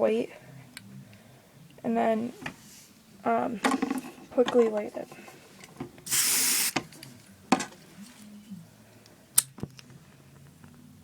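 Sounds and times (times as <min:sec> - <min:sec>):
aerosol spray hiss: 0:06.1 - 0:06.8.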